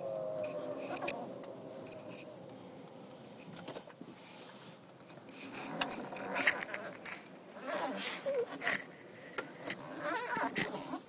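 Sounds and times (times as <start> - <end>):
faint gliding whine: 0.0 - 9.6
low drivetrain rumble: 0.0 - 11.0
scraping and clicking sounds: 0.4 - 2.3, 4.8 - 11.0.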